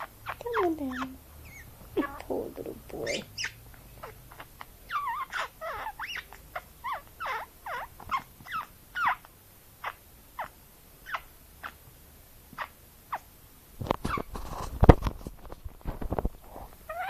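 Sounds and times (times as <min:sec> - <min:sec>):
budgerigar chirping: 0:00.0 - 0:11.8.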